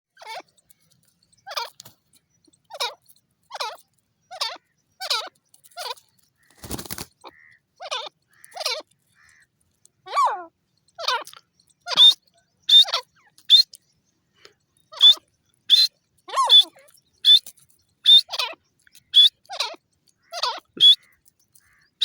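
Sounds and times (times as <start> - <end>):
francolin calling: 10.0 - 22.0.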